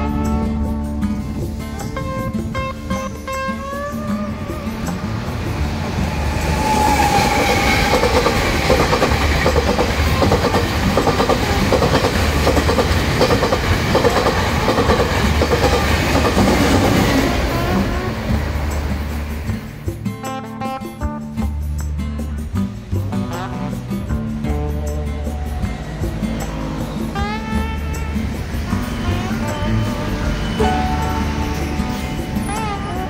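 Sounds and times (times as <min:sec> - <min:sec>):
train passing at speed: 0:03.4 - 0:20.0, 0:25.3 - 0:33.0
wheels clacking over rail joints: 0:04.8 - 0:19.8.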